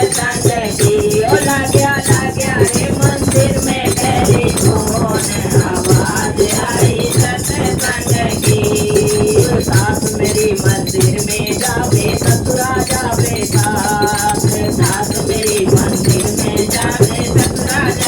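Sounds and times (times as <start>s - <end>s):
held melody line: 0.0s - 10.6s
regular drum beat: 0.0s - 12.5s
jingling percussion: 0.0s - 18.0s.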